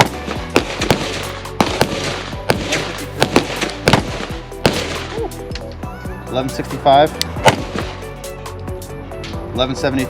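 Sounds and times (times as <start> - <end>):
gunshots: 0.0 - 5.2, 7.4 - 8.0.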